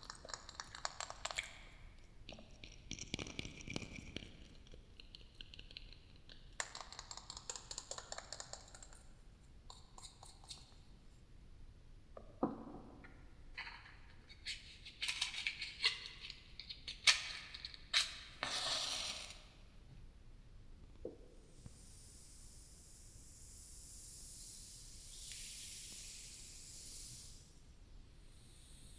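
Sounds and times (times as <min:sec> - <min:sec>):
long hiss: 0:21.4 - 0:28.9.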